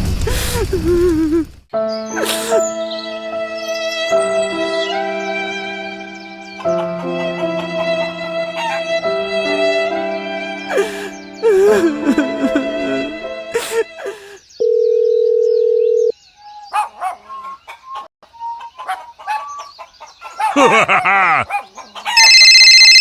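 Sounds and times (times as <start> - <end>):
music: 1.7 - 14.0
steady beep: 22.2 - 23.0.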